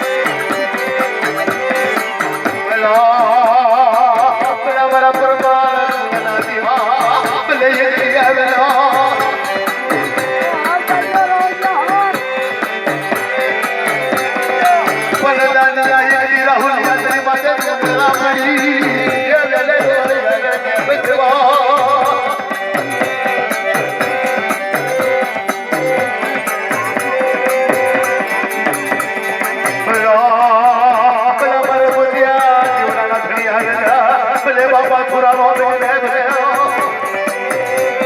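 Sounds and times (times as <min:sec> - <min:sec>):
person singing: 0:00.0 - 0:23.8
jingling rattling percussion: 0:00.0 - 0:38.0.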